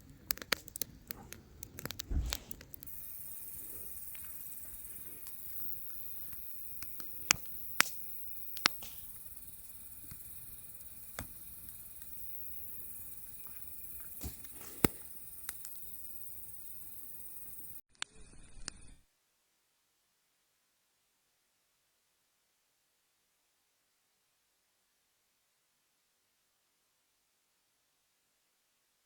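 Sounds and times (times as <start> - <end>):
campfire crackling and popping: 0.0 - 17.8
fire soft hiss: 0.0 - 17.8.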